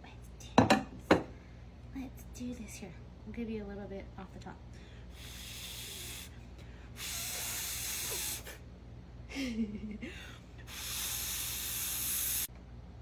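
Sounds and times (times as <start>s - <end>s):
hissing bursts: 5.2s - 6.3s, 7.0s - 8.6s, 10.7s - 12.5s.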